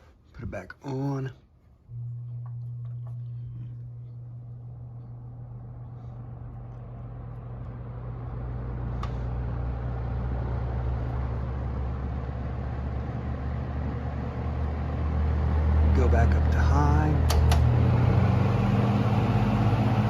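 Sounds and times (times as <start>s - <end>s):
box fan motor humming: 1.9s - 20.0s
rush of air from fan: 4.9s - 15.9s.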